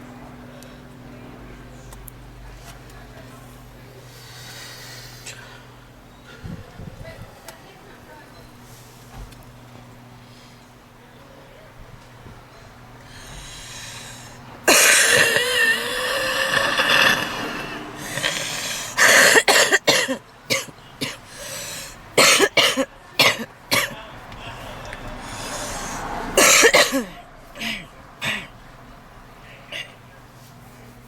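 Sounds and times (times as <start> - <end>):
rasping breaths: 4.0 - 6.8, 13.0 - 19.5, 21.1 - 22.2, 24.3 - 26.4, 29.4 - 30.0
woman coughing: 14.7 - 21.3, 22.2 - 24.0, 26.4 - 28.5
woman wheezing breath: 15.3 - 19.2.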